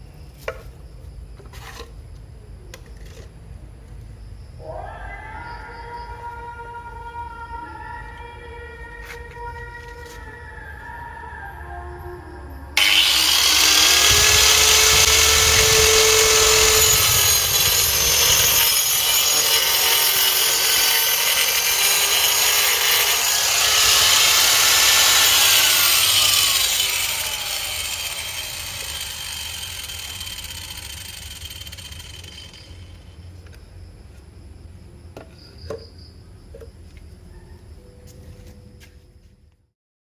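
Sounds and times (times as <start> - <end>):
saw blade cutting wood: 12.8 - 32.8.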